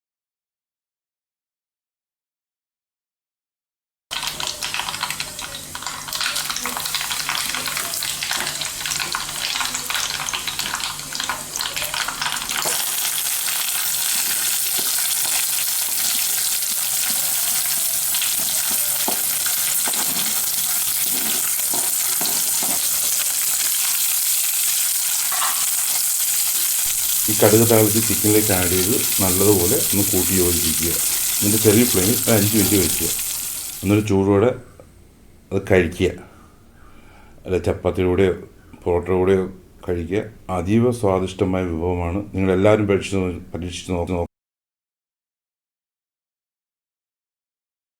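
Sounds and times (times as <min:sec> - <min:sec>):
mustard seeds popping in hot oil: 0:04.1 - 0:34.0
oil sizzling: 0:04.1 - 0:34.1.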